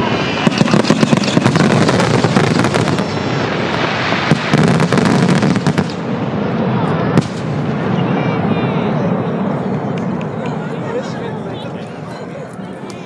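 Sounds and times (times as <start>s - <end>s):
fireworks crackling and bangs: 0.0s - 8.5s.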